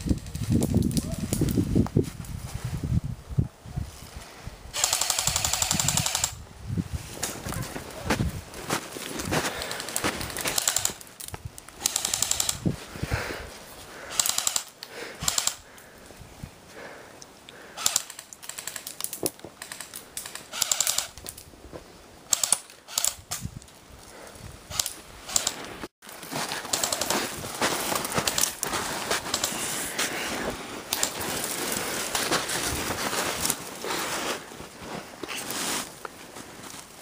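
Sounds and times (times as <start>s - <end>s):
airsoft guns firing bursts: 4.8s - 6.4s, 9.7s - 11.0s, 11.8s - 12.6s, 14.1s - 15.6s, 17.8s - 18.9s, 19.6s - 21.2s, 22.3s - 23.2s, 26.6s - 28.5s.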